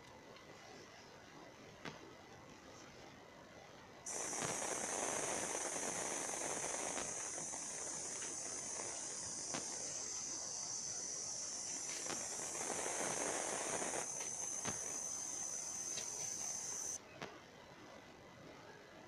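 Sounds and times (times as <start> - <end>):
insect trilling: 4.1 - 17.0.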